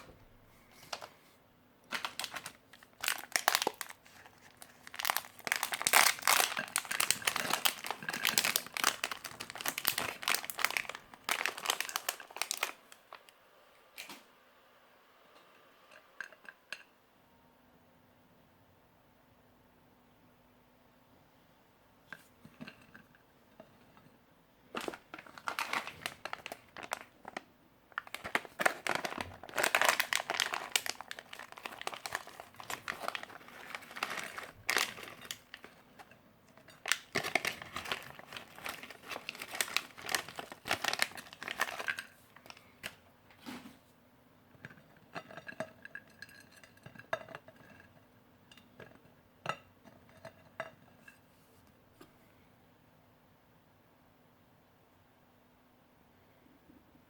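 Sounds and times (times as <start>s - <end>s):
plastic and foil packaging crinkling: 1.9s - 13.3s, 24.7s - 43.8s.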